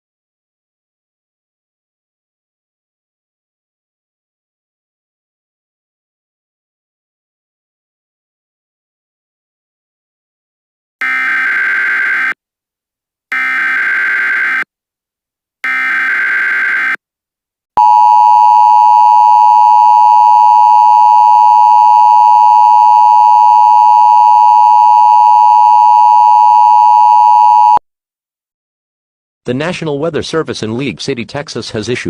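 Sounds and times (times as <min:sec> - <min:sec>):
two-tone attention signal: 0:17.8 - 0:27.8.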